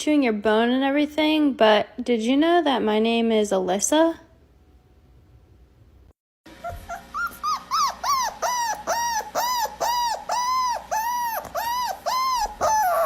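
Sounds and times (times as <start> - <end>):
dog whining: 6.5 - 13.0.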